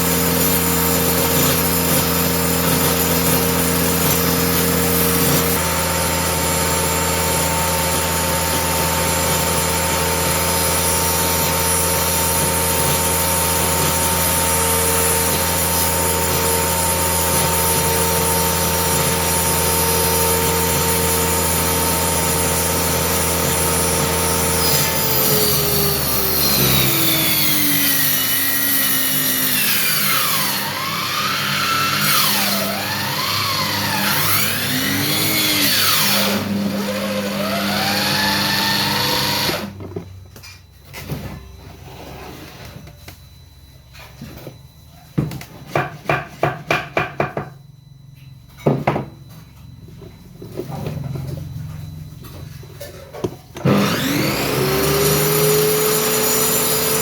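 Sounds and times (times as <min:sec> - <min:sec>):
circular saw cutting: 0:00.0 - 0:39.8, 0:53.6 - 0:57.0
saw blade whine winding down: 0:00.0 - 0:39.9, 0:49.8 - 0:57.0
wavering whines: 0:23.6 - 0:45.8, 0:47.2 - 0:57.0.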